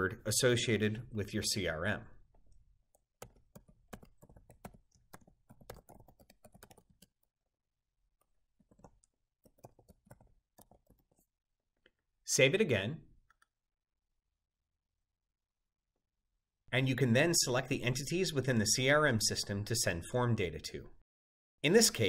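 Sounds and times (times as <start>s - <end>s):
keyboard typing: 2.3s - 7.3s, 8.2s - 11.3s.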